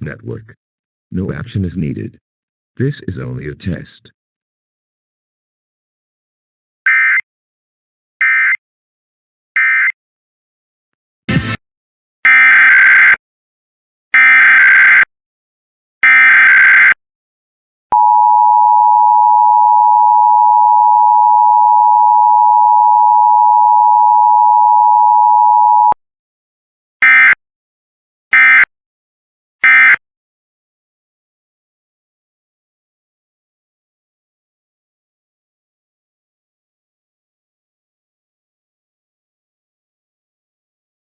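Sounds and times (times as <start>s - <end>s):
steady attention tone: 18.0s - 26.0s.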